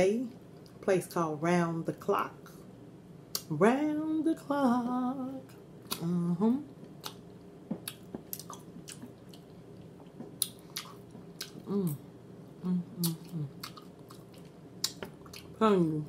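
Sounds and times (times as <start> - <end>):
person humming: 3.9 - 6.8, 11.6 - 13.7
person chewing food: 6.8 - 12.0, 12.6 - 15.6.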